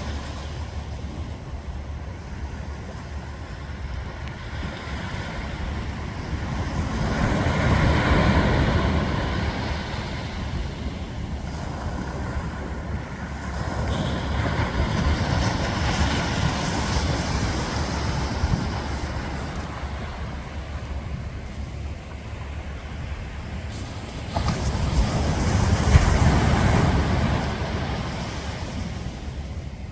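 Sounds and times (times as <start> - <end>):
waves washing on a beach: 0.0 - 29.9
wind rumbling on microphone: 0.0 - 29.9.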